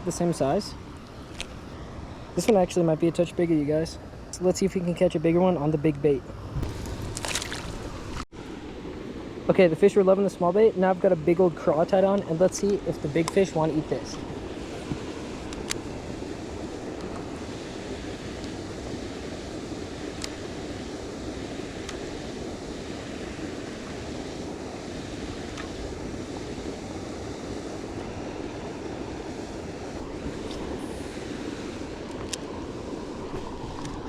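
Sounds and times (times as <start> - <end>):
wind on microphone: 6.3 - 8.3, 12.2 - 34.0.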